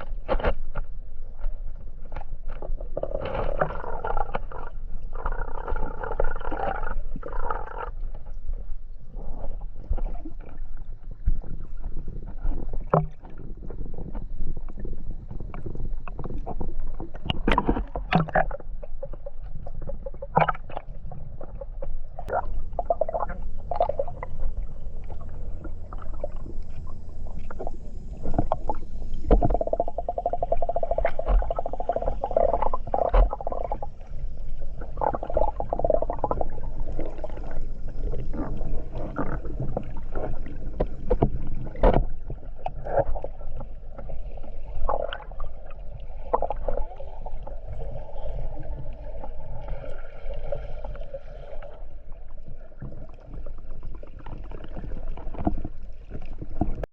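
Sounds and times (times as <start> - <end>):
water sloshing and gurgling: 0.0 - 56.9
low rumble: 21.3 - 42.5.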